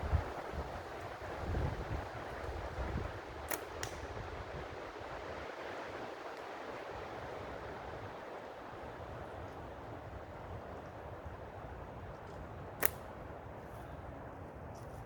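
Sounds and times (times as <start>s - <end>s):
wind rumble on microphone: 0.0s - 6.2s
forest wind: 0.0s - 15.0s
slingshot rubber bands snapping: 3.5s - 4.0s, 12.8s - 13.0s.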